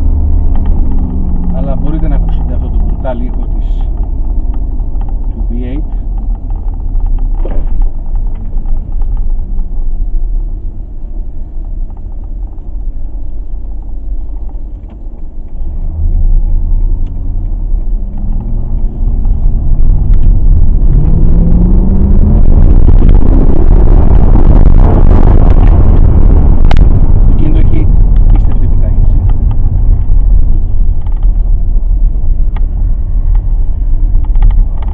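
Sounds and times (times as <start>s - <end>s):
car engine accelerating: 0.0s - 34.9s.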